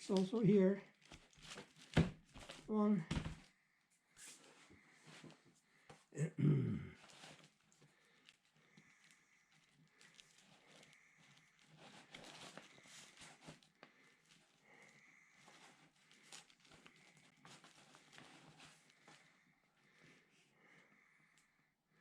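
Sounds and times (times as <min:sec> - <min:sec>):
clicks and rustles of handling wires: 0:00.0 - 0:06.1, 0:07.0 - 0:20.2.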